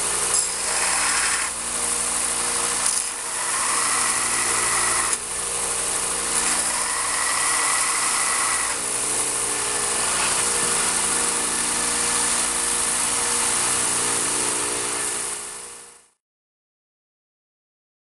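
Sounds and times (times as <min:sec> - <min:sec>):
blade grinding hiss: 0:00.0 - 0:05.3, 0:05.9 - 0:12.5
belt sander motor hum: 0:00.0 - 0:15.9.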